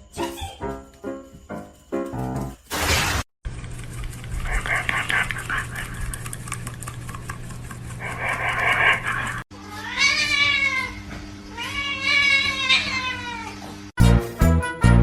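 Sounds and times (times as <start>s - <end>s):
cat meowing: 9.7s - 13.7s.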